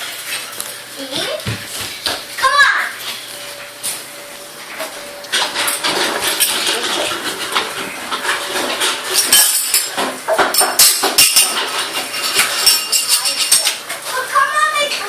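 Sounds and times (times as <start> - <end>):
dishes and utensils clattering: 4.7 - 15.0.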